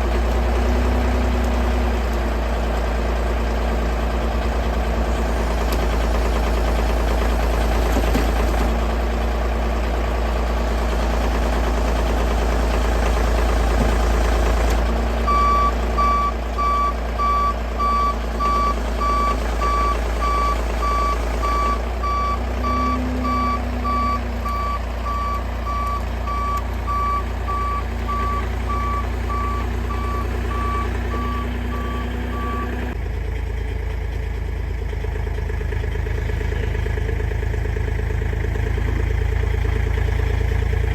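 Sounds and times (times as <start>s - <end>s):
vehicle engine running: 0.0s - 40.9s
reversing alarm beeping: 15.3s - 33.0s.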